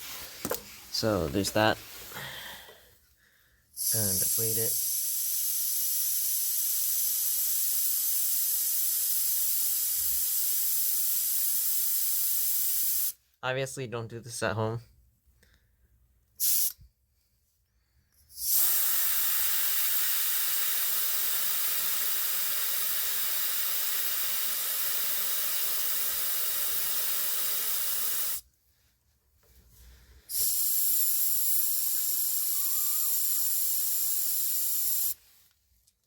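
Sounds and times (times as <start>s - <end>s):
air hissing out of tire valve: 3.7s - 13.2s, 16.4s - 16.9s, 18.3s - 28.5s, 30.2s - 35.4s.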